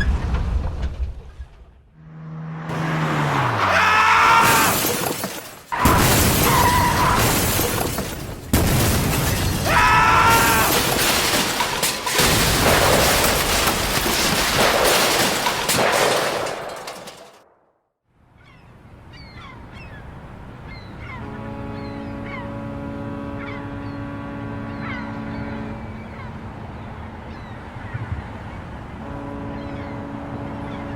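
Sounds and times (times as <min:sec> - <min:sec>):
crash and shattering: 0:02.7 - 0:17.5.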